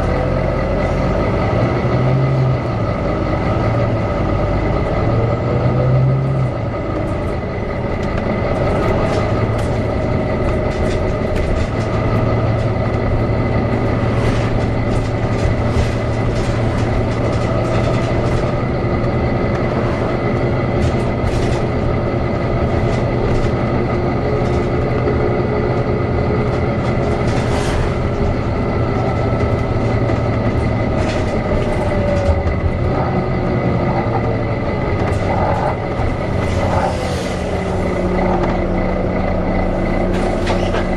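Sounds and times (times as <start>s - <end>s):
bus engine running: 0.0s - 40.9s
clicks and rattles: 7.9s - 25.1s.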